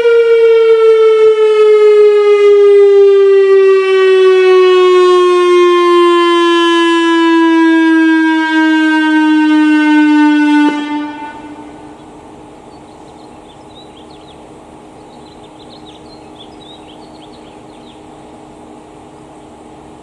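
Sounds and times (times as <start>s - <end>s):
electronic siren falling tone: 0.0s - 12.0s
siren echo: 0.0s - 12.1s.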